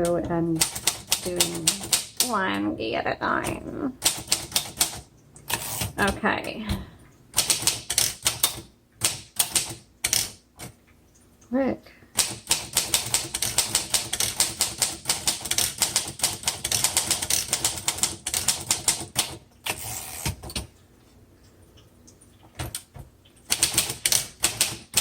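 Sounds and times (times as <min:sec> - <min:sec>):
manual typewriter typing: 0:00.0 - 0:02.4, 0:03.4 - 0:06.2, 0:07.3 - 0:10.8, 0:12.2 - 0:20.7, 0:22.6 - 0:25.0.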